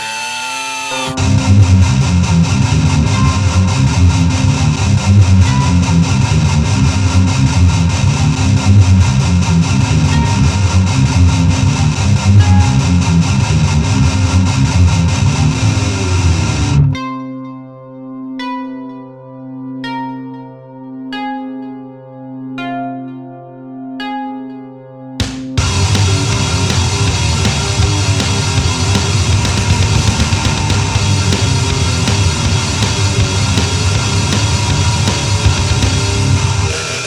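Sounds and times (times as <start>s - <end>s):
heavily distorted guitar: 0.0s - 17.0s, 25.2s - 37.0s
sustained electronic notes: 0.0s - 17.0s, 25.2s - 37.0s
electronic rock music: 0.0s - 17.4s, 25.2s - 37.0s.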